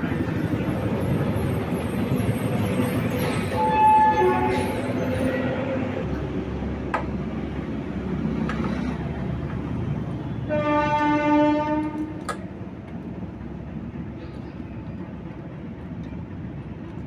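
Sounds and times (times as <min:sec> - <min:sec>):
engine and traffic rumble: 0:00.0 - 0:17.0
horn sounding: 0:10.5 - 0:12.2.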